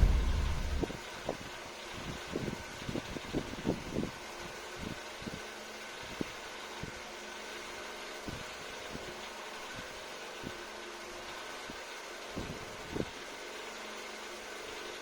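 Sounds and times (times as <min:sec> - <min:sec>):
steady background hum: 0:00.0 - 0:01.1.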